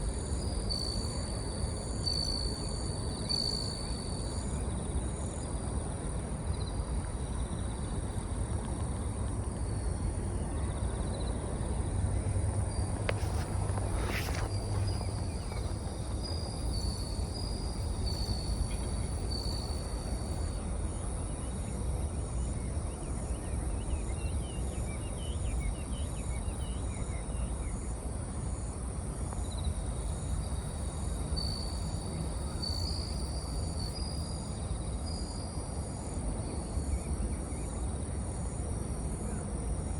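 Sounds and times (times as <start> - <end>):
crickets bell-like trills: 0.0 - 5.6, 14.3 - 21.7, 29.5 - 37.7
low background rumble: 4.0 - 24.2.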